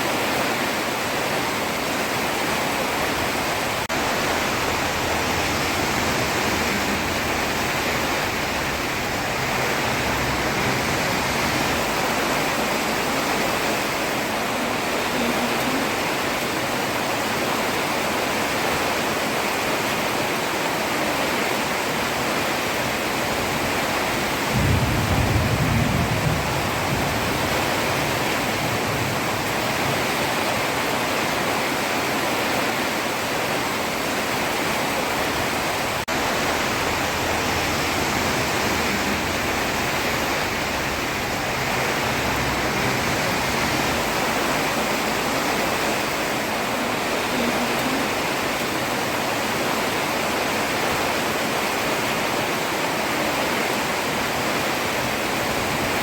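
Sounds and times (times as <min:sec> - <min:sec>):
heavy rain falling: 0:00.0 - 0:56.0
low rumble: 0:03.9 - 0:14.9, 0:35.9 - 0:46.7.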